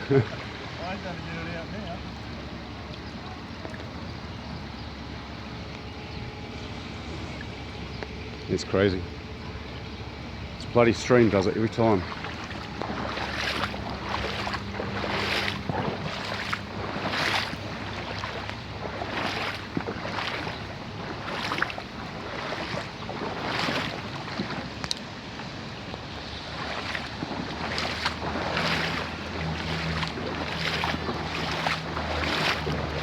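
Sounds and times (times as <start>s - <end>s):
flooded stream rushing: 0.0s - 2.2s, 10.6s - 33.0s
wind buffeting microphone: 3.9s - 33.0s.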